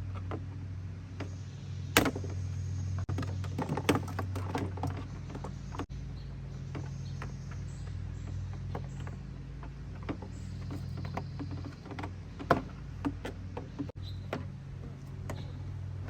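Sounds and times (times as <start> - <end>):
small clicks and rattles: 3.0 - 5.9.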